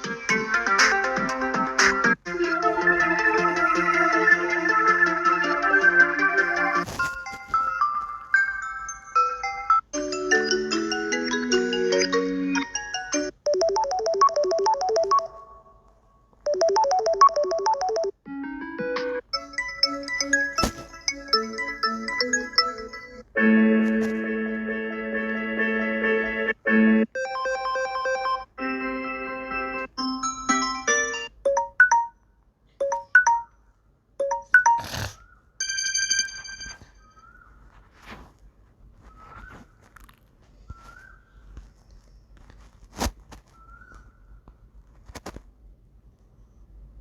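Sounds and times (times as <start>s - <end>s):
phone ringtones and alert tones: 7.3s - 23.9s, 25.0s - 32.2s, 32.8s - 33.6s, 34.2s - 34.8s, 35.6s - 37.2s
phone tone chord: 16.4s - 18.1s.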